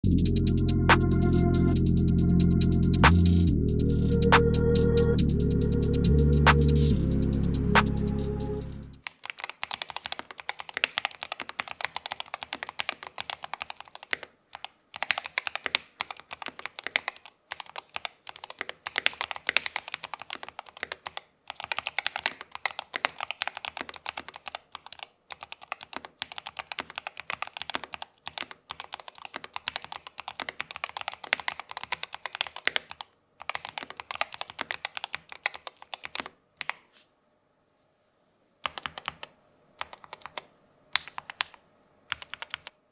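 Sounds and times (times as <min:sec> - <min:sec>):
fast keyboard typing: 0:09.0 - 0:36.8, 0:38.6 - 0:42.8.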